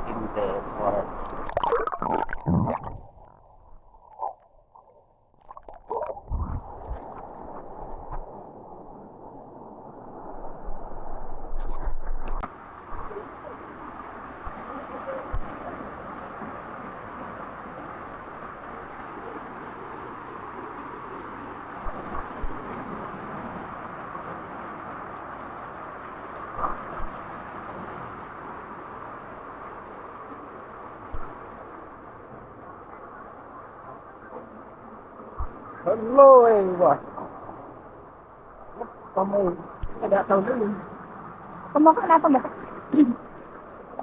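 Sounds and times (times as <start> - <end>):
underwater river flow: 0.0 - 44.0
river water rushing: 12.5 - 32.0
knocks and splashes: 35.4 - 35.6.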